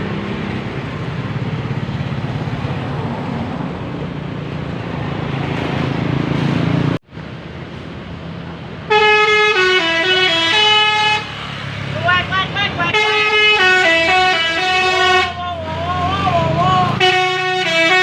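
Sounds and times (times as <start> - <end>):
bus diesel engine: 0.0 - 18.0
multi-tone bus horn tune: 8.8 - 18.0.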